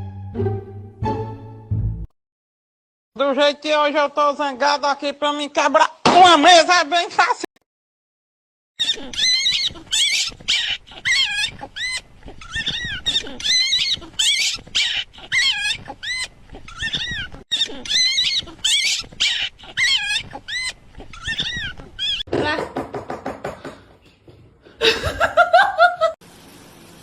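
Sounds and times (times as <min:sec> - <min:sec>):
animal high-pitched squeals: 0:08.8 - 0:22.3.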